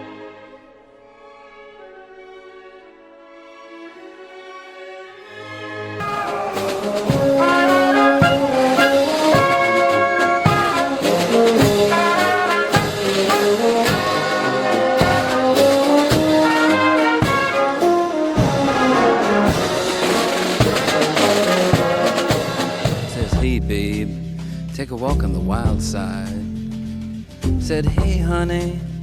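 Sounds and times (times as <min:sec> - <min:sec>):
horns playing a melody: 0:05.4 - 0:23.3
steady drum beat: 0:06.0 - 0:24.2, 0:25.2 - 0:26.6, 0:27.4 - 0:28.4.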